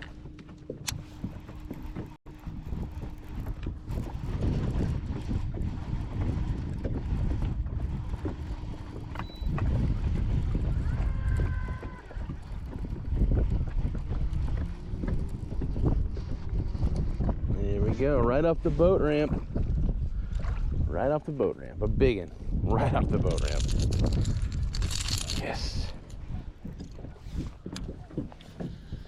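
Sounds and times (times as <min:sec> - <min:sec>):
wind buffeting microphone: 0:00.0 - 0:29.0.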